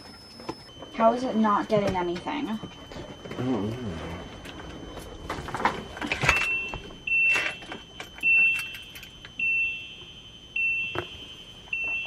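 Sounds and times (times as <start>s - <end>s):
dashboard warning chime beeping: 0.0s - 12.0s
keys jingling: 7.3s - 9.3s.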